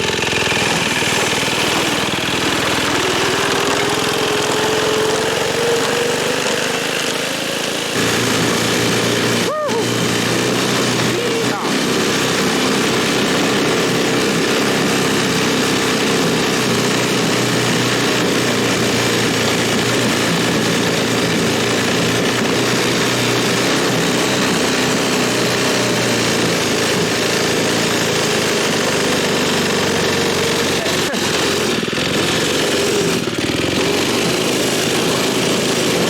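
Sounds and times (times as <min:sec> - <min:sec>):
snowmobile engine running steadily: 0:00.0 - 0:36.0.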